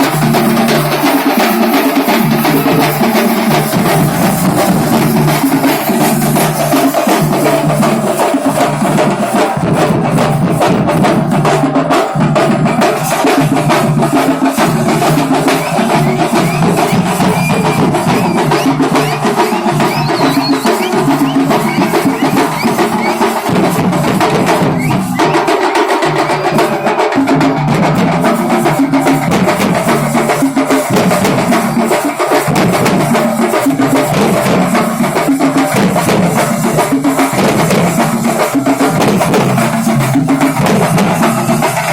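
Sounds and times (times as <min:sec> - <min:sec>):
fast folk drumming: 0:00.0 - 0:41.9.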